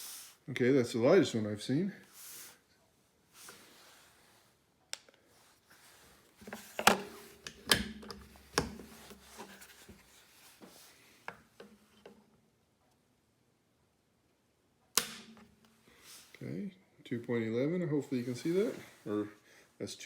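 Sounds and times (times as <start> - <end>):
rifle handling rubbing: 5.8 - 10.8.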